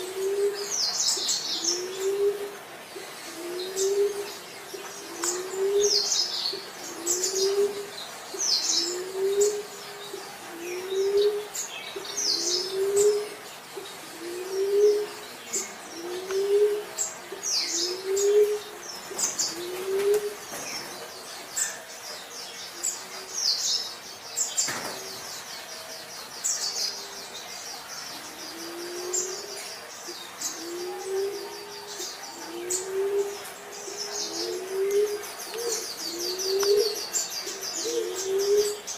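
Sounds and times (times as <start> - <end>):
dove cooing: 0.0 - 22.0, 28.2 - 38.9
small birds chirping: 0.0 - 38.9.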